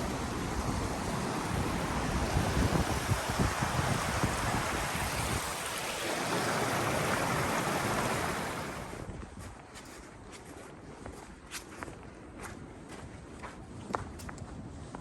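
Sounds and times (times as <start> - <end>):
wind buffeting microphone: 0.0 - 15.0
wind gust through woods: 0.0 - 15.0
faint footsteps: 9.0 - 15.0.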